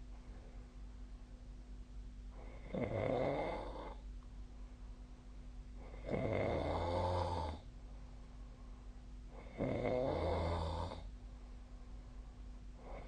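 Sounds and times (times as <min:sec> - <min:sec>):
person snoring: 0:02.4 - 0:04.0, 0:05.9 - 0:07.7, 0:09.4 - 0:11.1.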